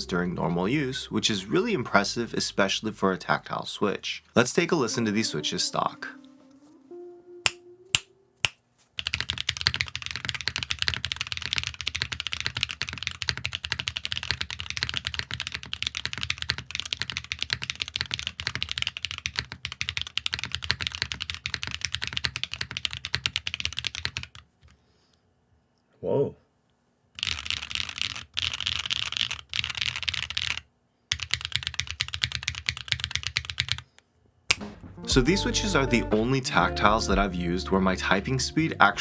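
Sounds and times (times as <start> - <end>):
fast typing on mechanical keyboard: 9.0 - 24.5, 27.2 - 33.9.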